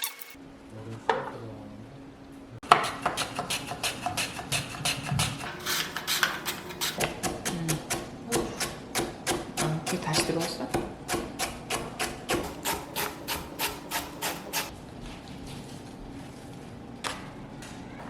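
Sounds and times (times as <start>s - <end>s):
knife chopping on cutting board: 2.6s - 14.7s.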